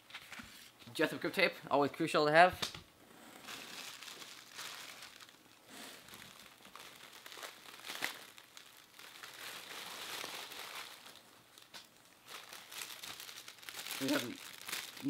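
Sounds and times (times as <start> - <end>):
packaging crinkling and rustling: 3.5 - 15.0.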